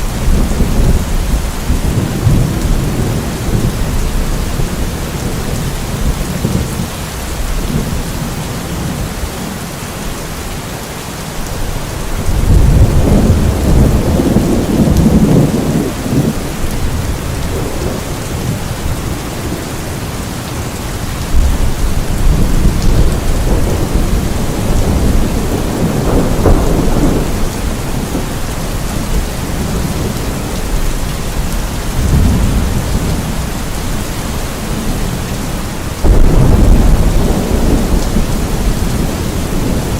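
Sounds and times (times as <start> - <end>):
rolling thunder: 0.0 - 9.6, 11.6 - 39.9
steady rain: 0.0 - 39.9.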